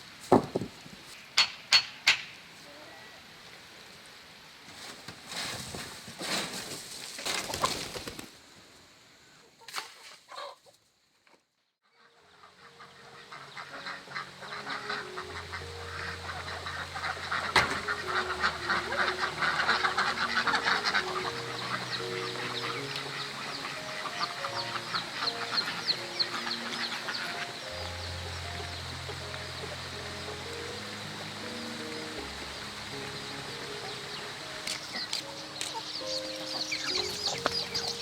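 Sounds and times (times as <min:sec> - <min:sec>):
knocks and rustles: 0:00.2 - 0:02.3
poultry calling: 0:11.8 - 0:38.0
background music: 0:12.2 - 0:38.0.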